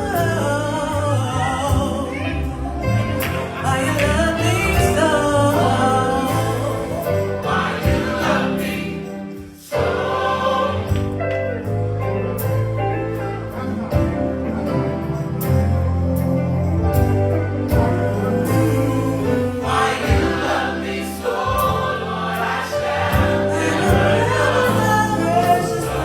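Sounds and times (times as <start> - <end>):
choir singing gospel with band: 0.0 - 26.0
steady bass line: 10.4 - 22.2.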